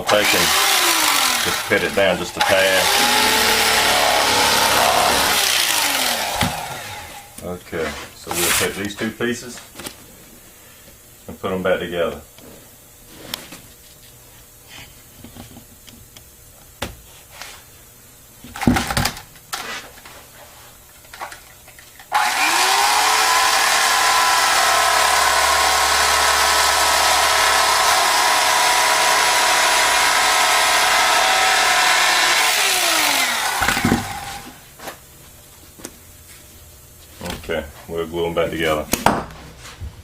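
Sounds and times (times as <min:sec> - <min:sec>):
electric power tool motor: 0:00.0 - 0:07.4, 0:22.1 - 0:34.6.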